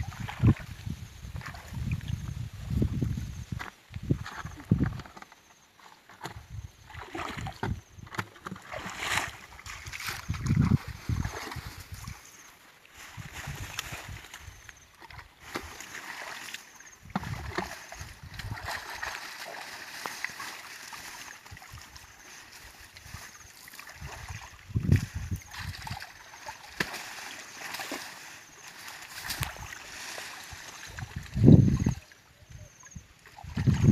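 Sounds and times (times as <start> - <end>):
water splashing and sloshing: 0.0 - 33.9.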